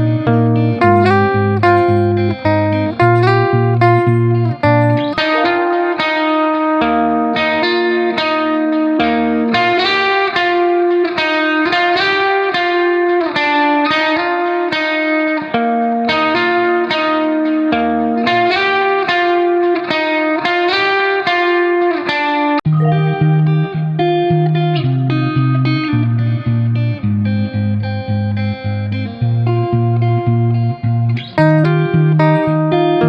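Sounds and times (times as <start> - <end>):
low bass line: 0.0 - 5.6, 22.7 - 33.0
plucked guitar melody: 0.0 - 33.0.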